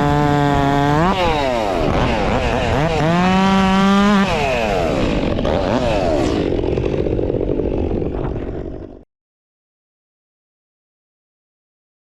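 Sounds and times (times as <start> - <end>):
chainsaw revving down to idle: 0.0 - 9.0.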